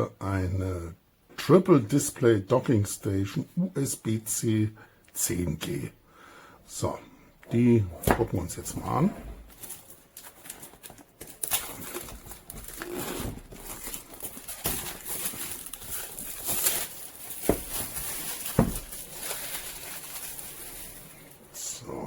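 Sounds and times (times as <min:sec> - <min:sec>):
packaging rustling and sliding: 0:07.6 - 0:21.5.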